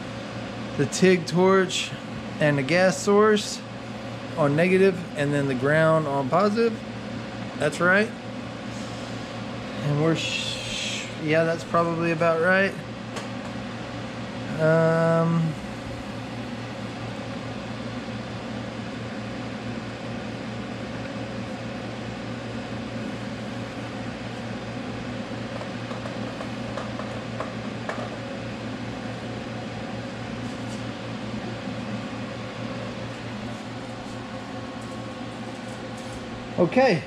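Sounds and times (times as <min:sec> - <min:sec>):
welding machine hum and fan whir: 0:00.0 - 0:37.0.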